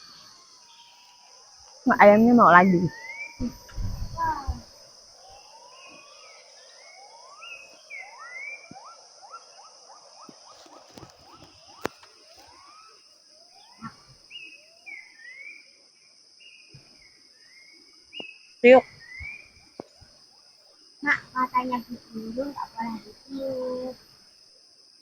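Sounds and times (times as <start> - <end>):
birds whistling rising notes: 0.0 - 15.8, 16.4 - 20.0
high-pitched insect drone: 0.0 - 25.0.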